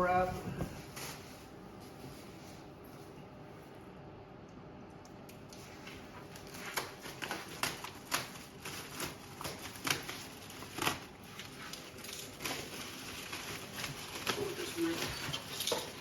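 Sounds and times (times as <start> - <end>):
bubble wrap crinkling: 5.4 - 16.0.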